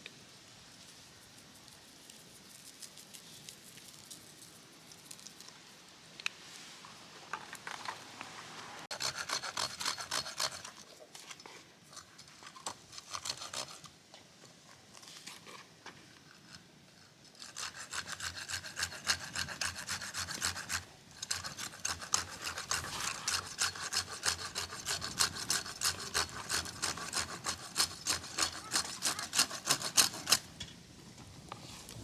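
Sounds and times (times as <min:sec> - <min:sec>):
hand saw cutting wood: 0:08.9 - 0:10.9, 0:12.4 - 0:13.9, 0:17.4 - 0:30.5.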